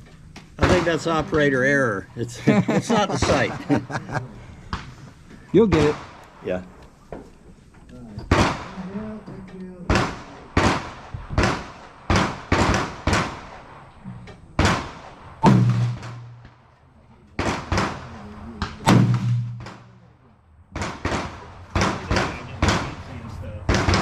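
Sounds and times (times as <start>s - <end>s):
gunshots: 0.6s - 1.4s, 5.6s - 6.2s, 8.3s - 9.0s, 9.9s - 13.8s, 14.6s - 16.6s, 17.4s - 20.0s, 20.7s - 23.0s, 23.6s - 24.0s.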